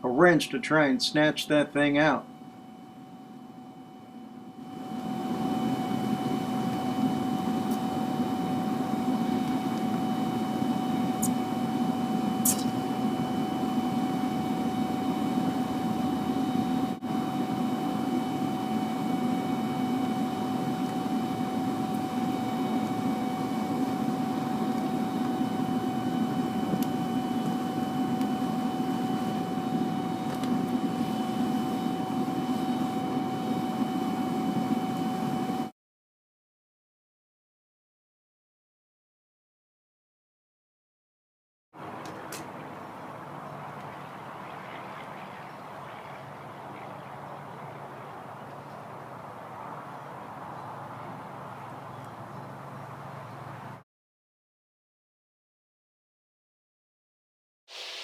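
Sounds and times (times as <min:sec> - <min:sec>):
blower whine: 0:00.0 - 0:35.7, 0:57.7 - 0:58.0
furnace burner roaring: 0:00.0 - 0:35.7, 0:41.8 - 0:53.8.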